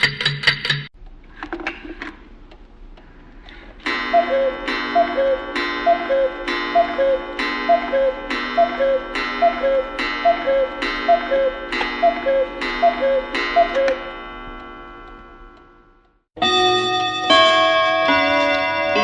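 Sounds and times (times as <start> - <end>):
clock ticking: 3.8 - 16.2.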